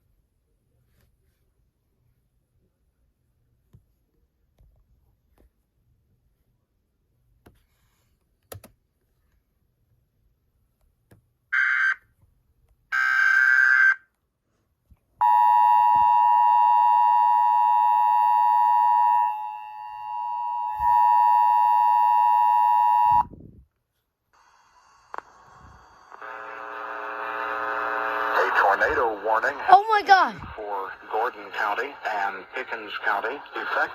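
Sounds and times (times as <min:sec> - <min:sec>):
person reading an alert: 0:28.4 - 0:33.9.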